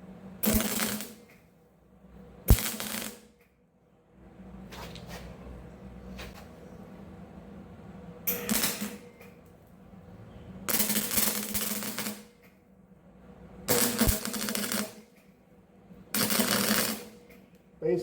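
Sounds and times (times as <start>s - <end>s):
welder crackling: 0.4s - 1.4s, 2.5s - 3.4s, 10.7s - 12.5s, 13.7s - 15.2s, 16.1s - 17.3s.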